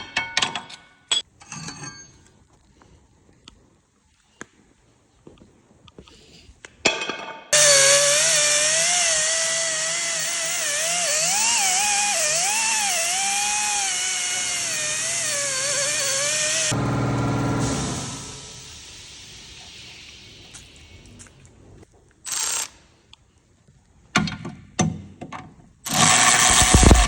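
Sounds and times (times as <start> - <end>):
power tool whining with loud hiss: 7.6 - 21.2, 25.9 - 27.0.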